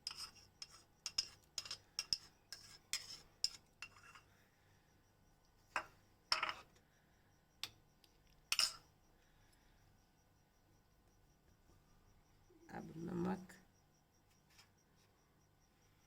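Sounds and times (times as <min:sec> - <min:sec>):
spoon clinking against metal pot: 0:08.5 - 0:08.8.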